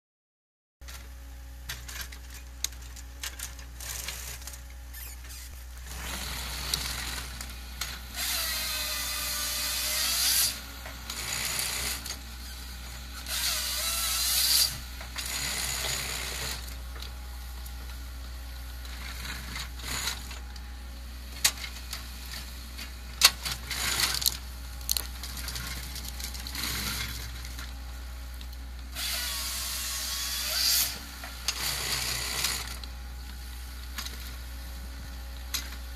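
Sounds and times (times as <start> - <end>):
chainsaw cutting logs: 5.6 - 18.0, 18.8 - 20.6, 23.2 - 27.8, 28.9 - 33.0.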